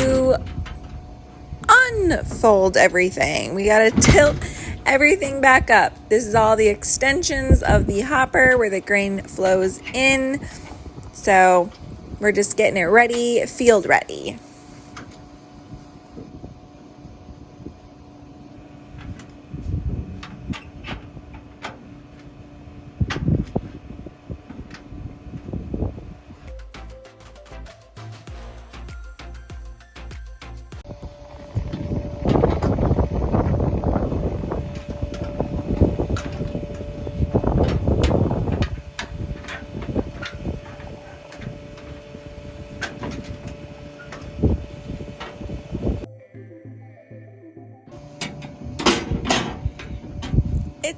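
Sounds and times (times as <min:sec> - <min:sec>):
steady low machine hum: 0:00.0 - 0:27.0, 0:27.6 - 0:50.9
heavy metal clunks: 0:03.8 - 0:04.8.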